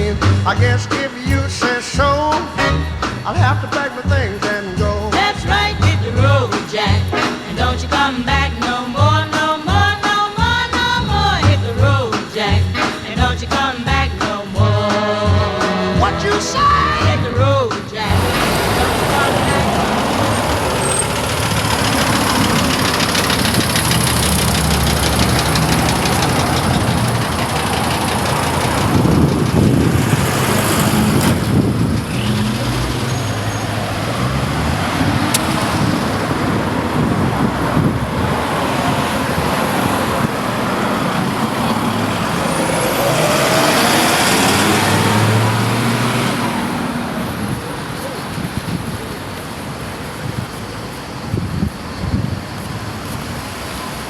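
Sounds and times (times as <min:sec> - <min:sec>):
road noise: 0:00.0 - 0:54.0
vehicle engines running: 0:00.0 - 0:54.0.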